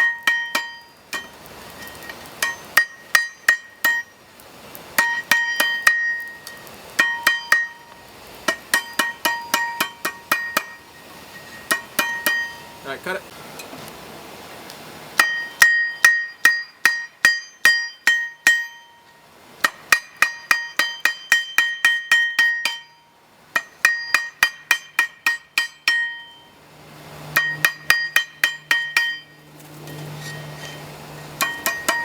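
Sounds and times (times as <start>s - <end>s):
hammer striking chisel on steel: 0.0s - 1.4s, 2.4s - 4.1s, 5.0s - 7.9s, 8.5s - 10.9s, 11.6s - 12.8s, 15.2s - 19.0s, 19.6s - 26.5s, 27.3s - 30.8s, 31.4s - 32.0s.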